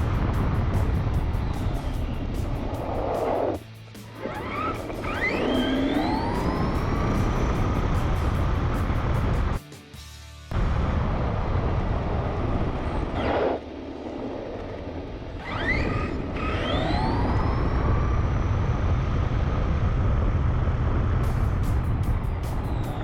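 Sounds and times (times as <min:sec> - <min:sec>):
road rumble: 0:00.0 - 0:09.6, 0:10.5 - 0:23.0
wind noise: 0:00.0 - 0:09.6, 0:10.5 - 0:23.0
electric motor whining: 0:04.2 - 0:09.6, 0:15.3 - 0:19.5.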